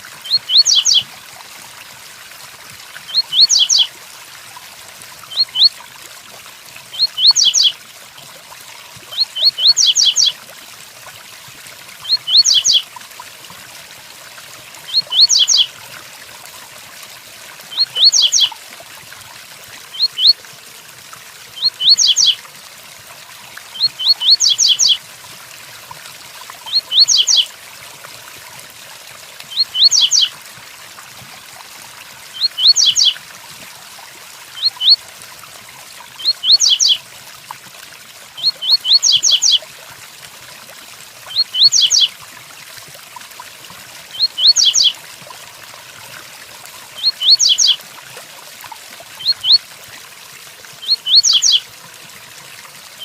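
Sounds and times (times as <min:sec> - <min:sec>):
bird singing high notes: 0:03.1 - 0:03.9, 0:15.1 - 0:15.7.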